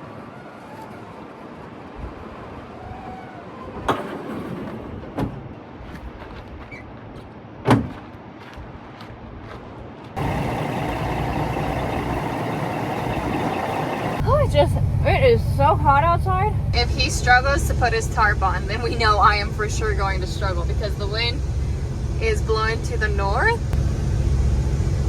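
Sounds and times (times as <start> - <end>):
truck engine running: 10.2 - 25.0.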